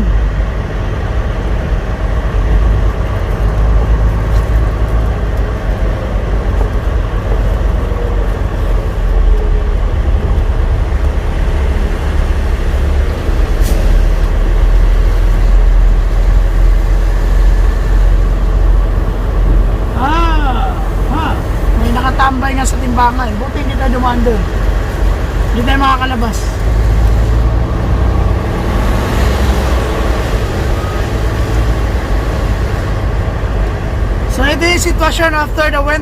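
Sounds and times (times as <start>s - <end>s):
truck engine rumble: 0.0s - 36.0s.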